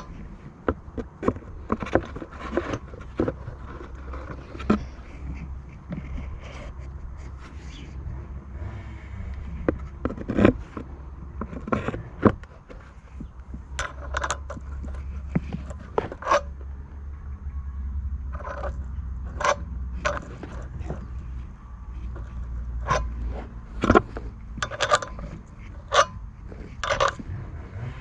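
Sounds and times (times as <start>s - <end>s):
low steady hum: 0.0s - 28.0s
small parts clicking and clinking: 9.2s - 16.8s, 18.2s - 27.4s.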